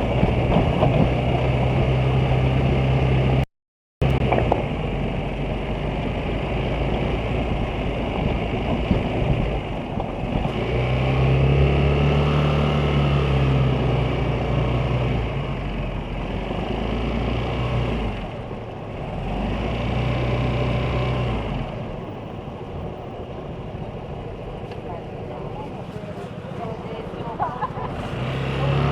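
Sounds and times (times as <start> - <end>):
scooter engine running: 21.4 - 28.9.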